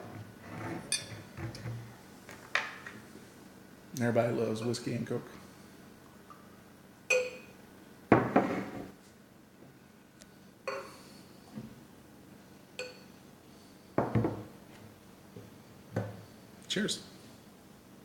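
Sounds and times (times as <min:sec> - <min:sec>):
glasses and bottles clinking: 0:00.9 - 0:01.2, 0:07.1 - 0:07.5.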